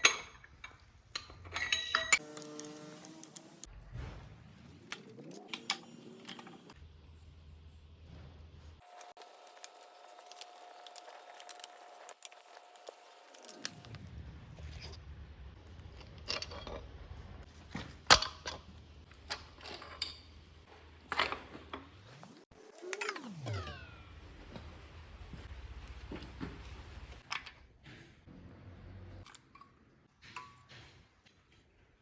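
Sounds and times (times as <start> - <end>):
metal tools clinking: 0.0 - 3.2.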